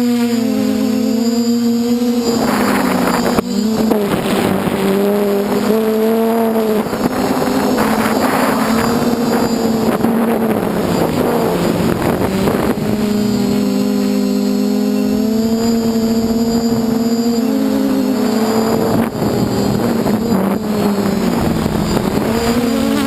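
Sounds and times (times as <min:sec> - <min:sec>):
drone propellers buzzing: 0:00.0 - 0:23.0
wind on microphone: 0:00.0 - 0:23.0.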